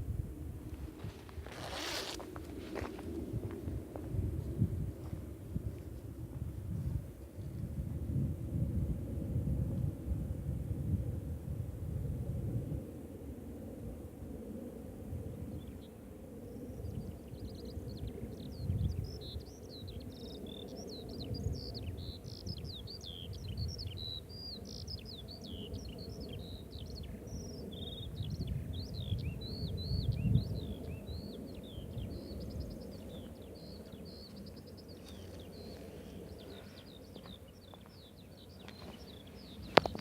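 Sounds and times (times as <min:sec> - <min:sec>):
songbirds chirping: 0:15.5 - 0:40.0.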